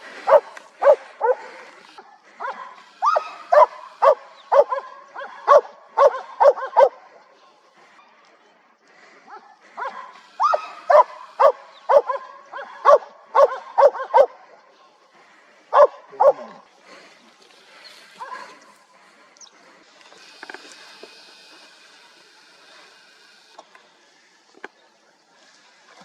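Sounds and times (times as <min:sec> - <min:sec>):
dog barking: 0:00.3 - 0:07.0, 0:09.3 - 0:14.4, 0:15.7 - 0:16.6.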